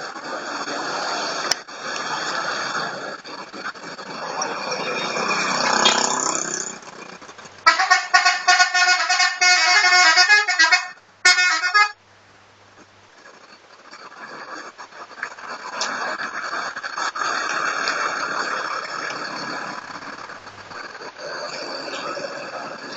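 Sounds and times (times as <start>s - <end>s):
passing vehicle road noise: 0.0s - 11.0s, 14.0s - 22.9s
musical air horn tune: 7.7s - 12.0s.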